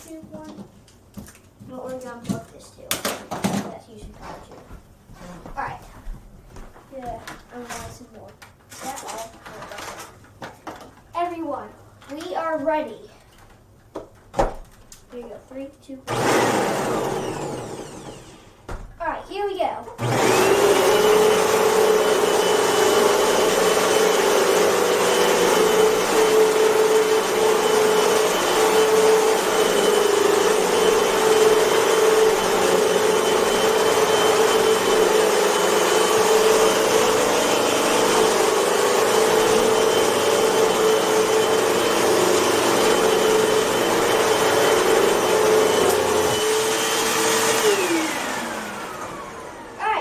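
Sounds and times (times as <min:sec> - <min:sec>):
vacuum motor winding down: 0:16.1 - 0:18.7, 0:20.0 - 0:50.0
vacuum cleaner motor whining: 0:16.1 - 0:18.8, 0:20.0 - 0:50.0.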